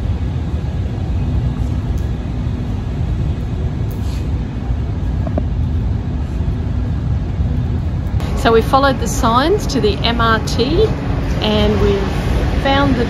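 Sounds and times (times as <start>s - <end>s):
faint steady hum: 0.0s - 13.0s
vehicle engine rumble: 0.0s - 13.0s.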